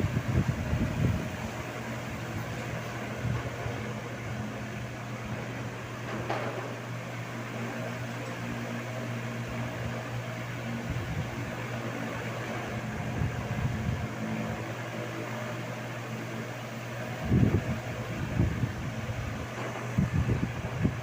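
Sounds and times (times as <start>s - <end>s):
wind buffeting microphone: 0.0s - 5.4s, 10.6s - 14.6s, 17.0s - 21.0s
electric fan humming: 0.0s - 21.0s.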